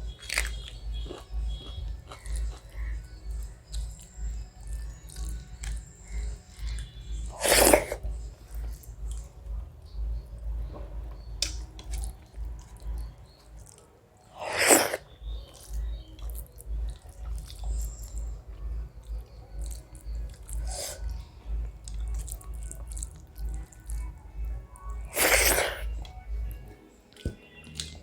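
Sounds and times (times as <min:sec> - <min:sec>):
close chewing mouth sounds: 0:00.0 - 0:28.0.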